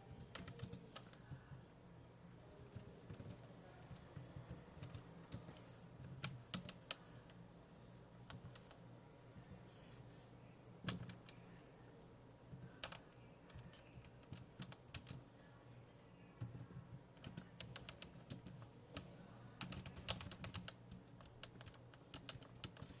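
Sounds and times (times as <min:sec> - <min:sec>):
computer keyboard typing: 0:00.0 - 0:01.7, 0:02.4 - 0:07.0, 0:10.8 - 0:11.4, 0:12.5 - 0:15.2, 0:16.4 - 0:23.0.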